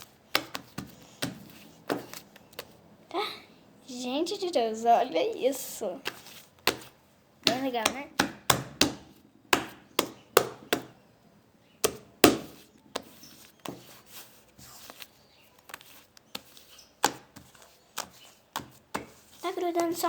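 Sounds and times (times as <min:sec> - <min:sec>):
soft slime handling noises: 0:00.0 - 0:03.0, 0:12.5 - 0:20.0
slime slapping on tabletop: 0:06.1 - 0:10.9.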